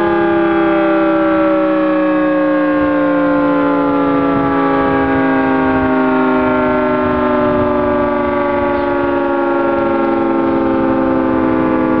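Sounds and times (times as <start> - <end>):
outdoor warning siren: 0.0 - 12.0.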